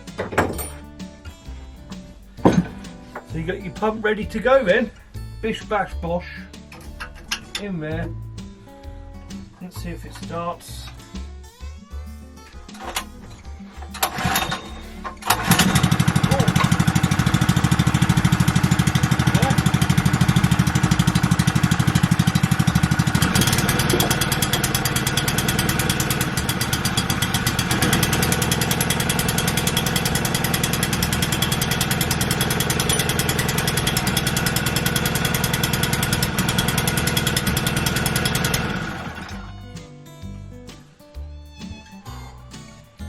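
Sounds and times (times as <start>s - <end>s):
small petrol engine running: 13.8s - 39.6s.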